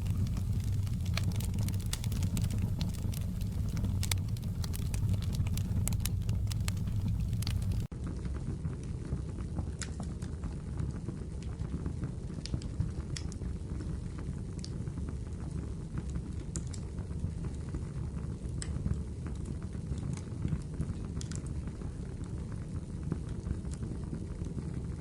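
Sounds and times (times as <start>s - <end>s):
wood fire crackling: 0.0s - 7.9s.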